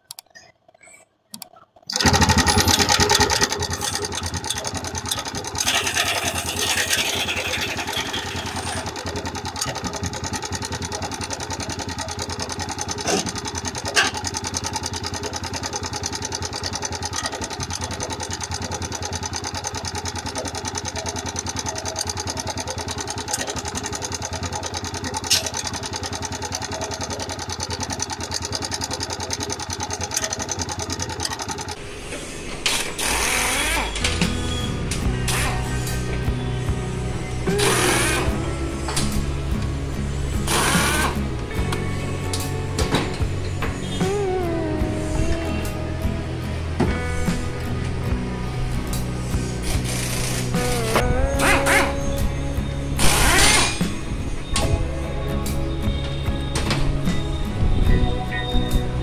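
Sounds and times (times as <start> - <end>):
motorcycle engine starting and idling: 1.3 - 59.0.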